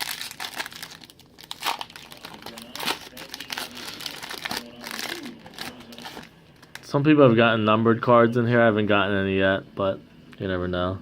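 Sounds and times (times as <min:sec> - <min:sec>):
foil wrapper crinkling and tearing: 0:00.0 - 0:06.9.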